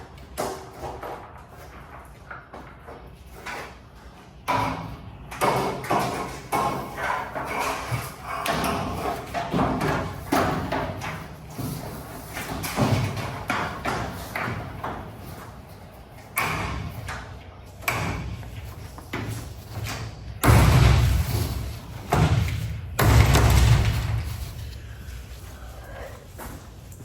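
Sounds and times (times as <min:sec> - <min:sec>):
knocks on garage door: 0:16.4 - 0:24.4
heavy rumbling thuds: 0:20.3 - 0:25.2.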